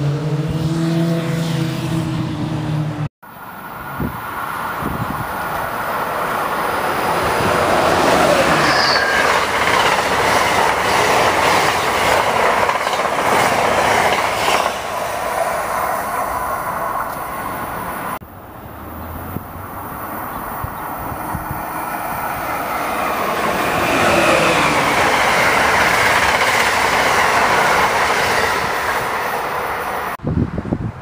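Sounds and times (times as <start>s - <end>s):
passenger train rumbling past: 0.0s - 31.0s
train wheel squeal: 8.1s - 10.0s.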